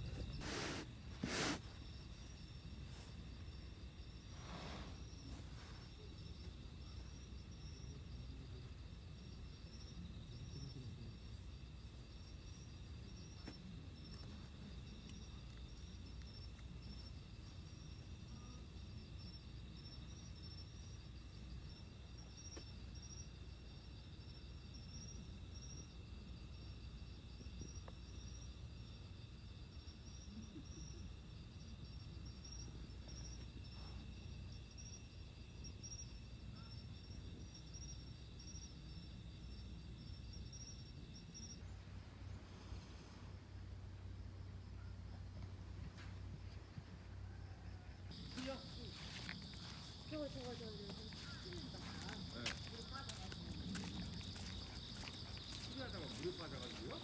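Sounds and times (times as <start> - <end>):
crickets chirping: 0.0 - 57.0
high insect trills: 48.1 - 57.0.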